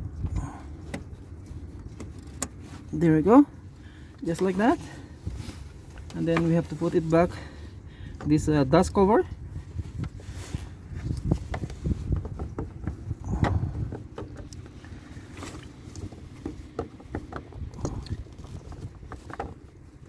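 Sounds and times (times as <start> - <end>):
low background rumble: 0.0 - 20.0.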